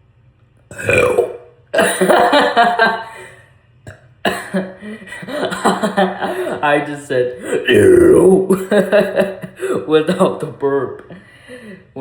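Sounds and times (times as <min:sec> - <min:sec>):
person burping: 0:00.7 - 0:04.7, 0:07.4 - 0:09.7.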